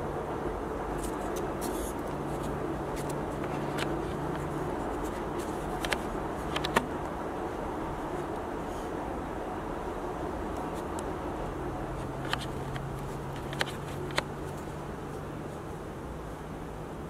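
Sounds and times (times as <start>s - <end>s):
steady low hum: 0.0s - 17.0s
light scraping and handling: 0.9s - 7.1s, 11.9s - 15.6s
sharp small clicks: 1.0s - 7.1s, 12.0s - 14.7s.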